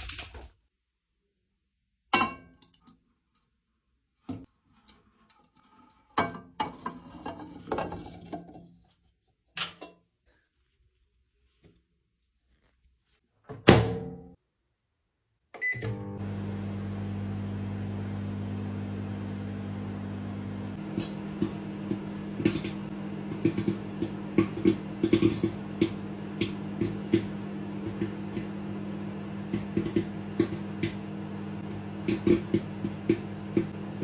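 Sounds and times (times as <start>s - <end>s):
microwave oven humming: 15.6s - 34.0s
popcorn popping: 17.5s - 34.0s.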